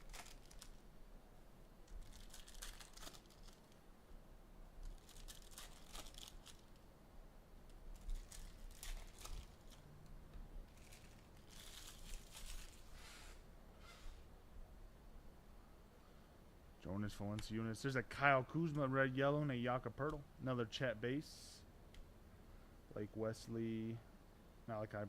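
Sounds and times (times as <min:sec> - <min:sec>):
plastic wrappers tearing: 0:00.0 - 0:00.8, 0:01.9 - 0:03.8, 0:04.8 - 0:06.8, 0:07.9 - 0:09.9, 0:10.7 - 0:13.0.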